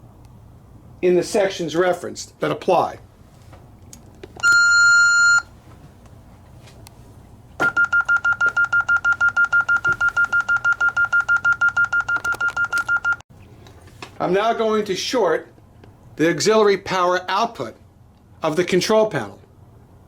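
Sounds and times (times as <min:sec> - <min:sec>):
electronic keypad beeping: 0:04.4 - 0:05.5, 0:07.6 - 0:13.2.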